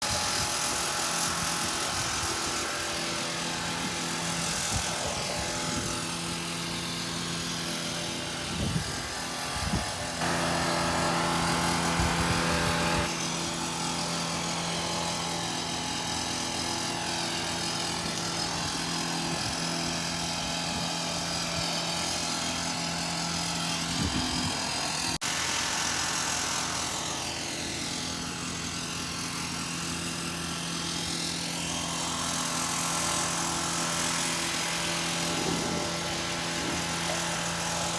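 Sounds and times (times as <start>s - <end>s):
small engine running steadily: 0.0s - 37.9s.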